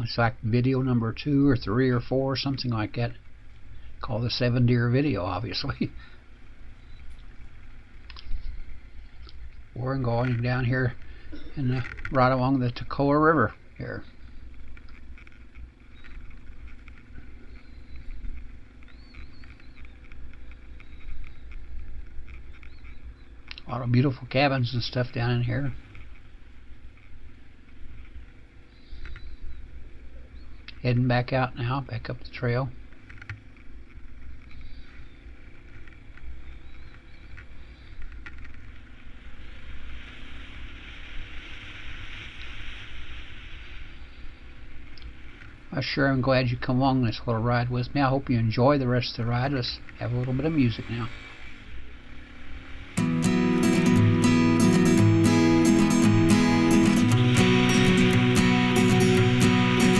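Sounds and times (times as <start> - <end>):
high chirps: 53.0 - 59.9.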